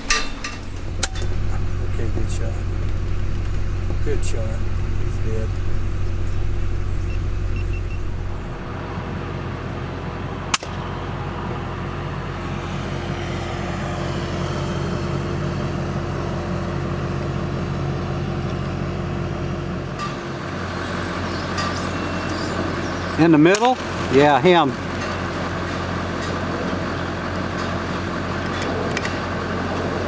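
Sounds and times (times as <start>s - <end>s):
vehicle engine idling: 0.0s - 8.9s.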